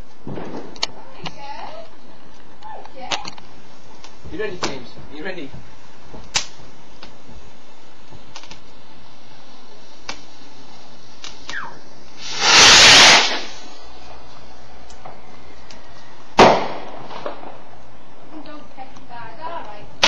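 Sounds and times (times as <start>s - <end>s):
faint firework pops: 0.1s - 1.5s, 6.1s - 7.4s, 10.0s - 10.5s, 11.2s - 17.9s
firework bang: 0.2s - 0.8s, 12.2s - 14.2s, 16.3s - 17.7s
firework hissing whoosh: 8.2s - 17.8s.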